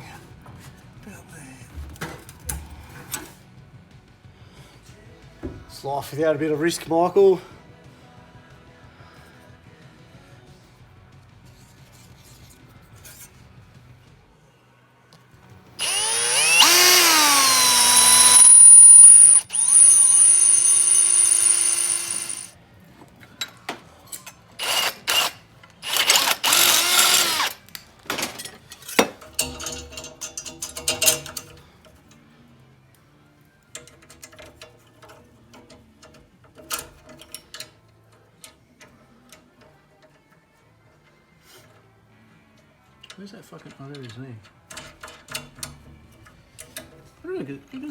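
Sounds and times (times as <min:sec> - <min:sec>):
power tool whining: 0:15.8 - 0:22.5, 0:24.6 - 0:27.6.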